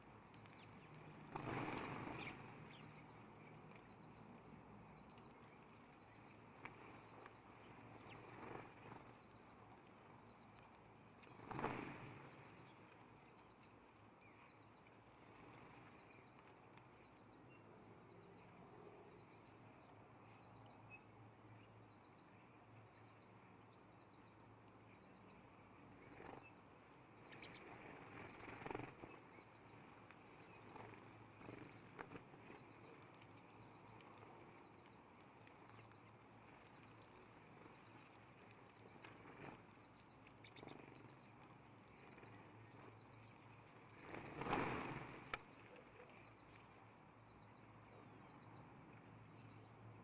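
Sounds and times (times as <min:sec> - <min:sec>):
birds rustling on a feeder: 0:00.0 - 0:18.1, 0:25.8 - 0:49.5.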